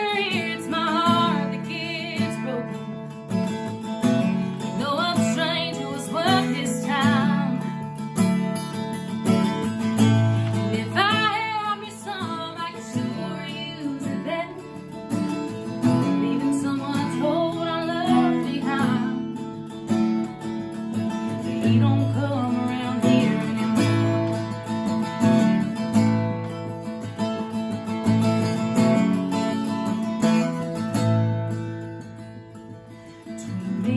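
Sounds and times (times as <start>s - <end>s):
woman singing: 0.0s - 3.7s, 4.4s - 8.6s, 10.1s - 19.8s, 20.9s - 24.6s, 33.1s - 33.9s
strummed acoustic guitar: 0.0s - 33.9s.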